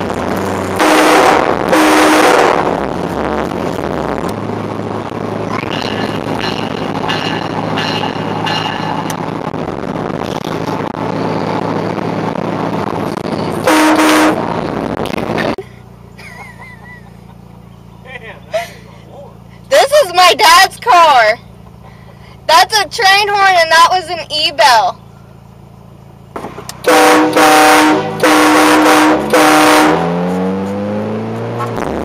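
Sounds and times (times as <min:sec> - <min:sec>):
road noise: 0:00.0 - 0:32.0
train horn blast: 0:00.8 - 0:02.8, 0:13.6 - 0:14.5, 0:26.8 - 0:30.6.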